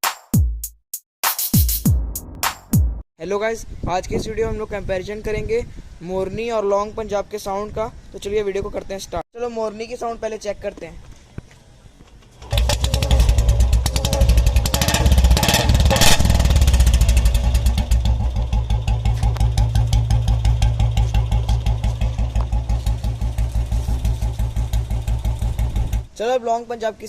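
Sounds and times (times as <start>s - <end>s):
motorcycle engine starting and idling: 12.3s - 26.1s.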